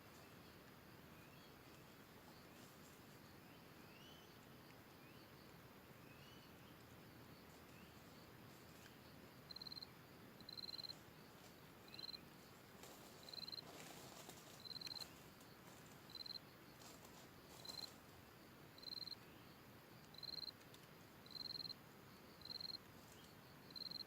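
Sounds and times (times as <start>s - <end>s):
cricket chirping: 0.0s - 24.0s
faint rustling: 10.8s - 18.2s.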